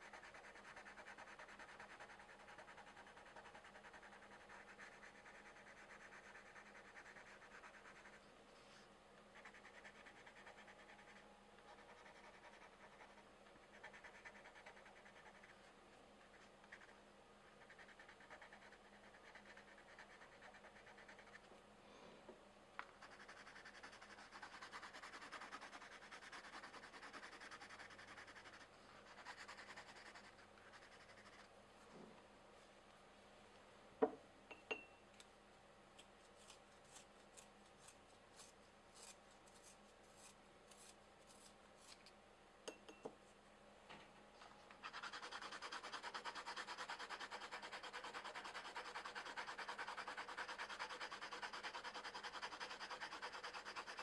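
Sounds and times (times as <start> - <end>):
pencils scratching on paper: 0.0 - 8.2, 9.3 - 21.5, 23.0 - 31.5, 44.8 - 54.0.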